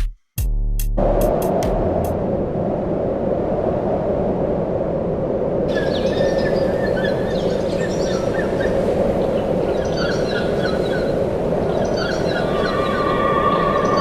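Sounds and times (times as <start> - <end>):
birds squawking: 9.7 - 14.0
low noisy drone: 12.3 - 14.0.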